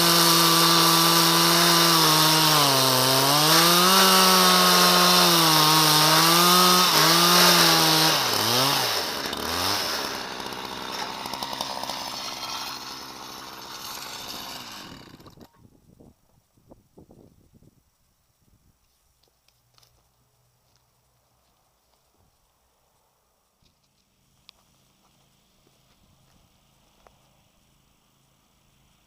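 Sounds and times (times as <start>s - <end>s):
chainsaw cutting log: 0.0s - 15.5s.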